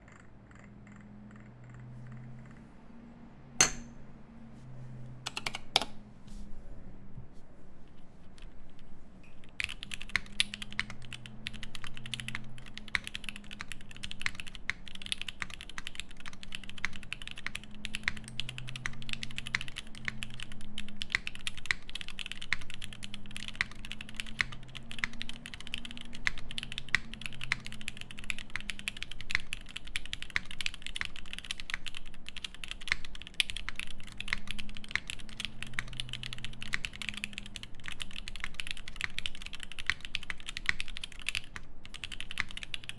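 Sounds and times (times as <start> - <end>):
typing on mechanical keyboard: 5.2 - 6.0, 9.4 - 42.9.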